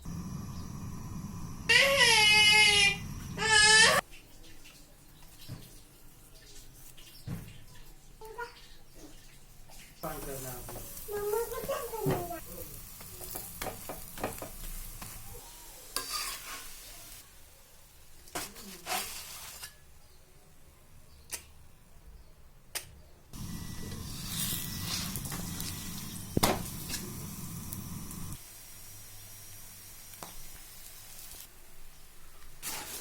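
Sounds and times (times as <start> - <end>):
flatbread sizzling on a griddle: 10.0 - 19.9, 23.4 - 33.0
cooking utensil clicks and scrapes: 16.0 - 16.8.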